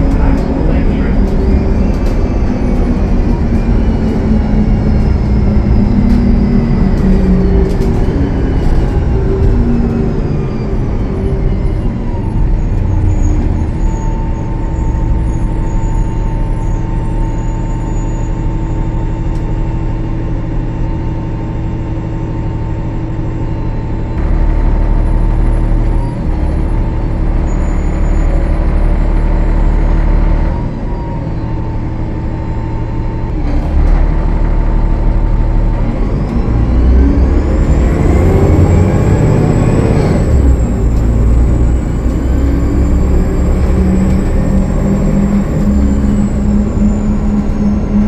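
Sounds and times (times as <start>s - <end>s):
bus diesel engine and transmission whine: 0.0s - 48.0s.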